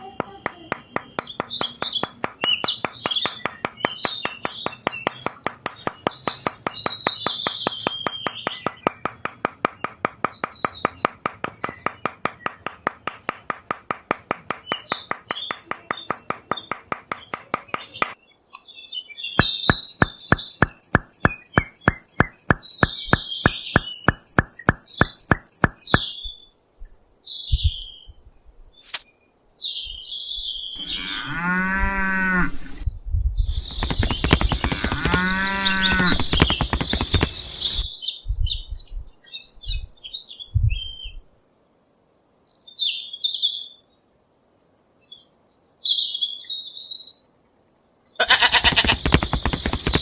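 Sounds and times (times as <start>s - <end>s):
steady rhythmic clicking: 0.0s - 18.2s, 19.4s - 26.1s, 33.6s - 37.9s, 48.5s - 50.0s
birds chirping: 0.0s - 28.1s, 29.1s - 31.4s, 32.8s - 41.2s, 48.2s - 50.0s
cow mooing: 30.8s - 32.7s.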